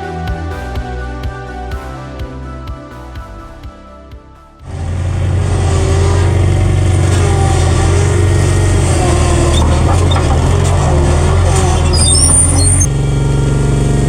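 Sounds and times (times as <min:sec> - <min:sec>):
vehicle engine running: 0:04.6 - 0:14.0.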